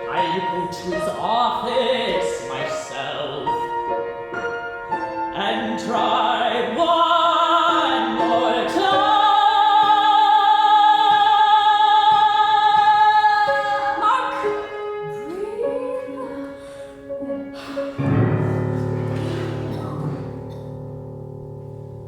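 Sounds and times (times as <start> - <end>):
piano accompaniment: 0.0 - 22.0
soprano singing operatically: 5.4 - 18.0.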